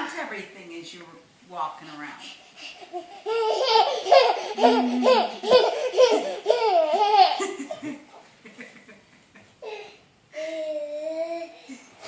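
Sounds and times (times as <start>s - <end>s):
young child giggling: 3.6s - 9.9s.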